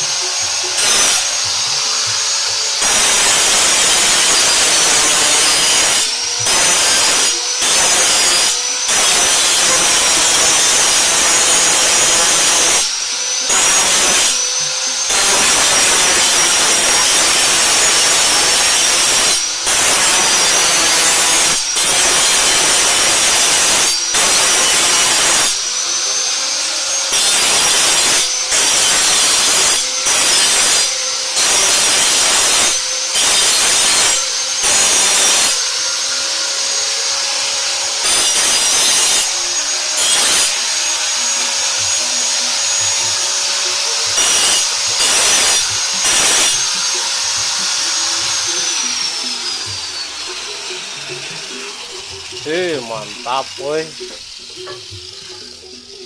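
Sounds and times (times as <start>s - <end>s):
power tool grinding metal: 0.0s - 56.0s.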